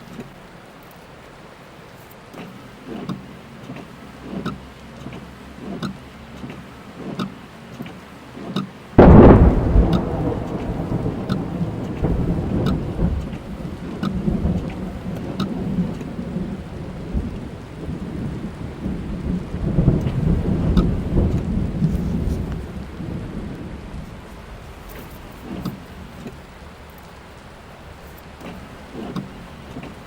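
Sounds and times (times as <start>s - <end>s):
rain on a car: 0.0s - 30.0s
faint regular ticks: 1.9s - 8.7s, 24.8s - 30.0s
thunder crack and rumble: 9.0s - 30.0s.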